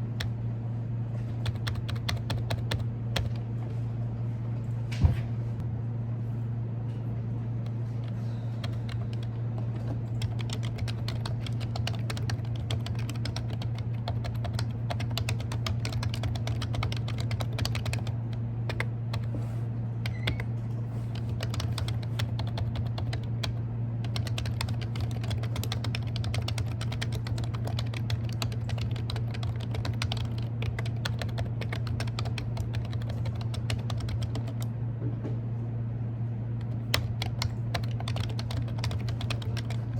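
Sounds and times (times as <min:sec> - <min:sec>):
fast keyboard typing: 0:01.3 - 0:03.5, 0:07.7 - 0:19.4, 0:20.0 - 0:34.7, 0:36.6 - 0:39.9.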